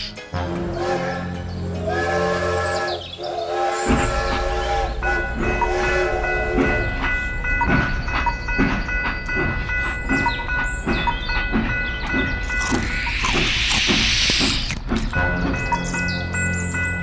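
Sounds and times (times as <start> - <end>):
low train rumble: 0.0 - 17.0
train horn: 0.3 - 7.3
train wheels clickety-clack: 3.8 - 17.0.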